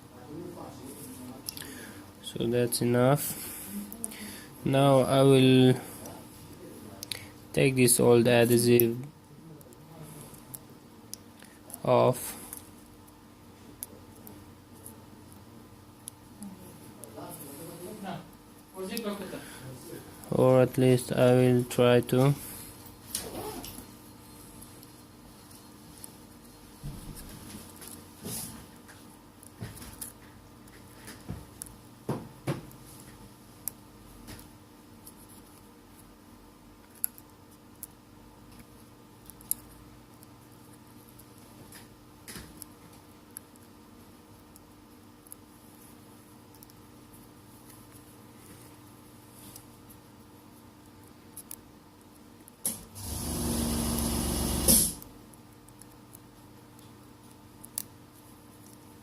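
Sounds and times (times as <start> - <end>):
small handling ticks: 42.5 - 52.6.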